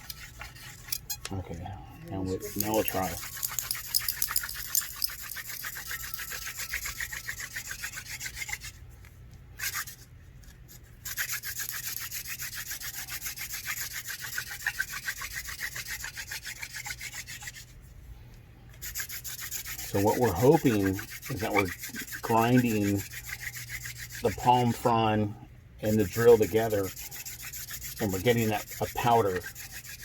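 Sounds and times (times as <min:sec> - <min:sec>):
wooden spindle grinding in board: 0:02.4 - 0:08.7, 0:18.9 - 0:24.8.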